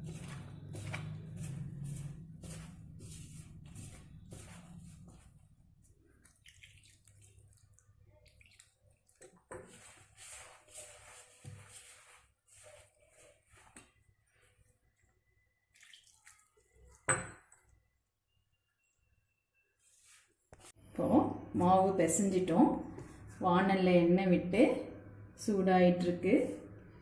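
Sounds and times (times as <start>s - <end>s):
hands mixing wet batter: 0.0s - 18.0s
water dripping: 6.1s - 9.5s, 15.6s - 17.8s.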